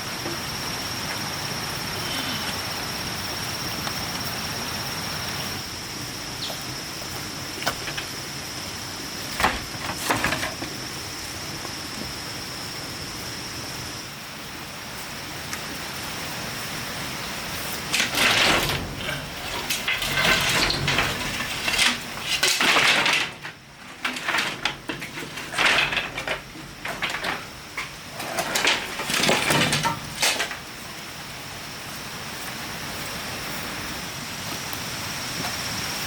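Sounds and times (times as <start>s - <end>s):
steady hiss: 0.0s - 36.0s
hard objects scraping and clattering: 9.4s - 10.8s, 17.7s - 30.7s.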